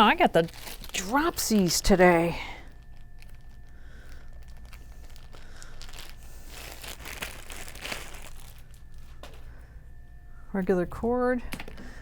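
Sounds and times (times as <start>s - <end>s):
plastic packaging crinkling: 0.0s - 9.5s.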